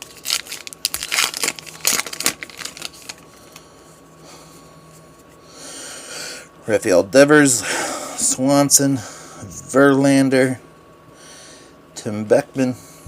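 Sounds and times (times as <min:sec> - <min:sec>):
wrapper crinkling and tearing: 0:00.0 - 0:03.7.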